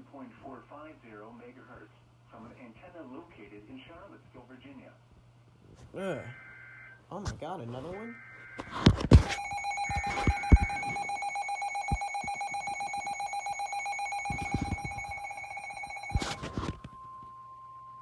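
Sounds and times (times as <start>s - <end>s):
steady warning tone: 8.1s - 18.0s
rapidly pulsing electronic beep: 9.3s - 16.4s.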